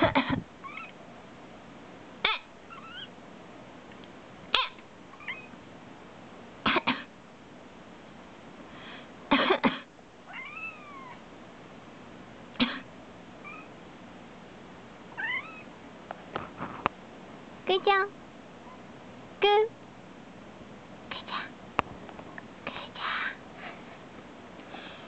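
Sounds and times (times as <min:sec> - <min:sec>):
person coughing: 0:00.0 - 0:00.4, 0:06.6 - 0:07.1, 0:09.3 - 0:09.9, 0:12.6 - 0:12.9
cat meowing: 0:00.6 - 0:01.0, 0:02.7 - 0:03.1, 0:05.1 - 0:05.6, 0:10.3 - 0:11.2, 0:13.4 - 0:13.7, 0:15.2 - 0:15.7.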